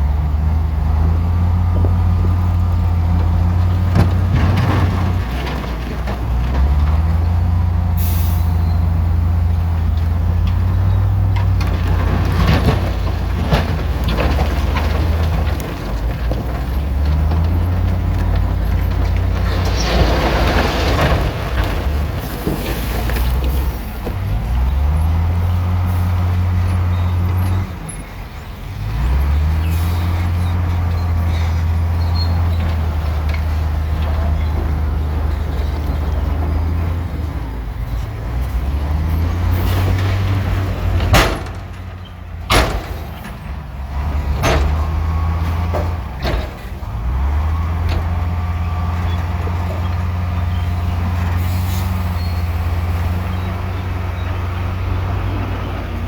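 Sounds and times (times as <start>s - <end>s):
heavy diesel engine droning: 0.0s - 56.0s.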